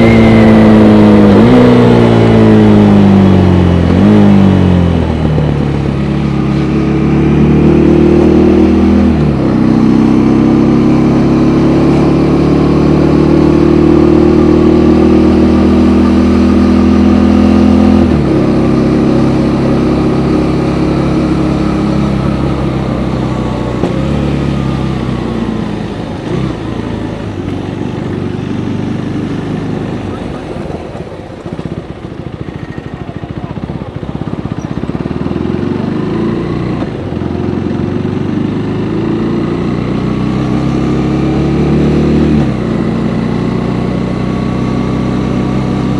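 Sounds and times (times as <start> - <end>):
motorcycle engine accelerating: 0.0 - 45.9.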